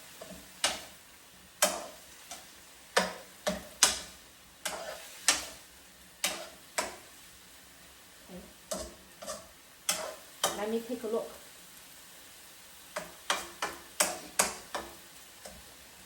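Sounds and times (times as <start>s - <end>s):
spatula scraping a frying pan: 0.0s - 1.0s, 1.6s - 7.3s, 8.5s - 10.6s, 12.9s - 15.8s.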